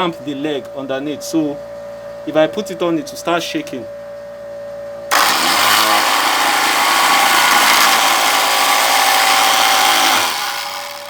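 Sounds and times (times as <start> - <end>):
lathe motor spinning up and running: 5.1 - 11.0.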